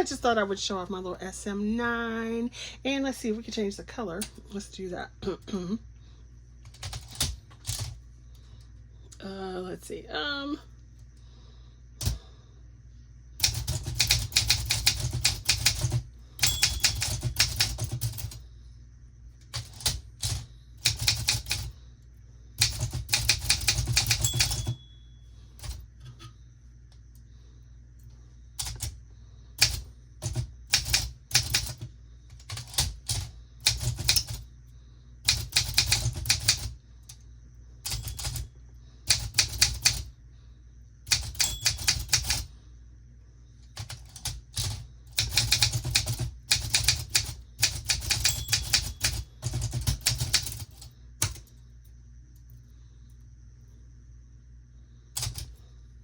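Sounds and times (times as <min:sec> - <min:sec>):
typewriter key strikes: 0:13.4 - 0:18.2, 0:22.6 - 0:24.8, 0:41.1 - 0:42.4, 0:45.2 - 0:51.4
typewriter bell ring: 0:16.4 - 0:17.8, 0:23.8 - 0:24.9, 0:41.2 - 0:42.3, 0:48.0 - 0:49.2.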